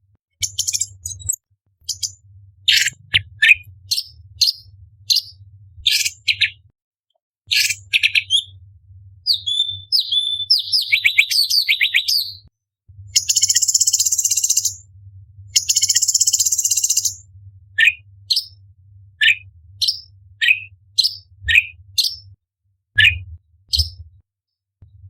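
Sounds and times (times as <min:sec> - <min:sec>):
bird singing: 0:00.4 - 0:06.6, 0:07.5 - 0:08.5, 0:09.3 - 0:12.5, 0:13.2 - 0:14.8, 0:15.6 - 0:17.2, 0:17.8 - 0:18.6, 0:19.2 - 0:22.3.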